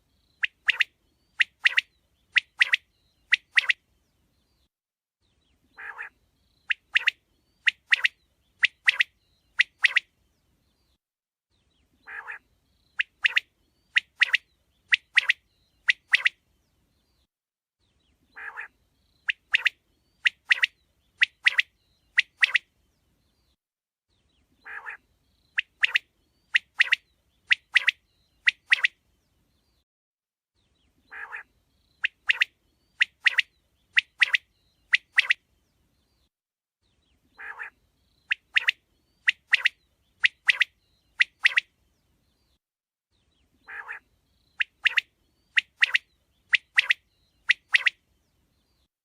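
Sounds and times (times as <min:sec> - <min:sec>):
quail calling: 0:05.8 - 0:06.1, 0:12.0 - 0:12.4, 0:18.3 - 0:18.7, 0:24.6 - 0:25.0, 0:31.1 - 0:32.5, 0:37.4 - 0:41.6, 0:43.6 - 0:44.0.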